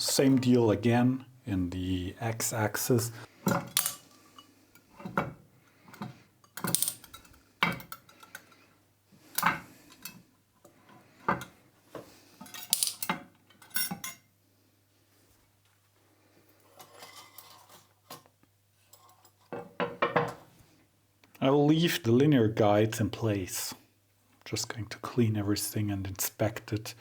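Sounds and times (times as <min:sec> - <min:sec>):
metal parts clinking: 0:03.6 - 0:04.2, 0:06.5 - 0:08.4, 0:12.4 - 0:14.2.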